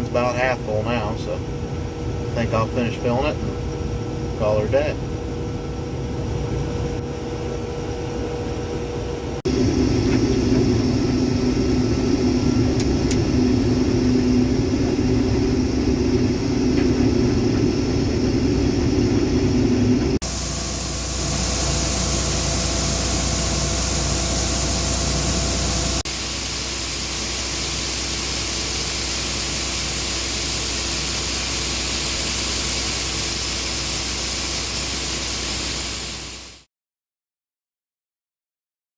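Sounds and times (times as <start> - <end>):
combine harvester running: 8.7 - 36.5
strong hiss: 20.2 - 36.6.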